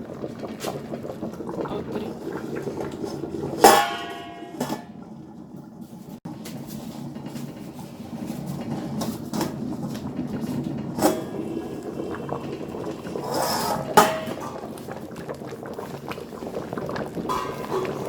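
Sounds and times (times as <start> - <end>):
pot boiling rumble: 0.0 - 18.0
metal pot lid clanking: 3.5 - 5.0, 10.6 - 11.9, 13.1 - 15.0, 17.0 - 18.0.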